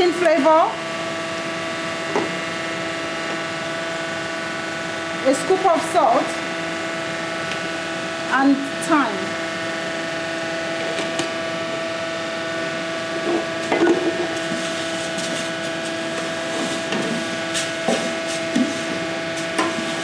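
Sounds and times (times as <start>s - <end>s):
steady machine hum: 0.0s - 20.0s.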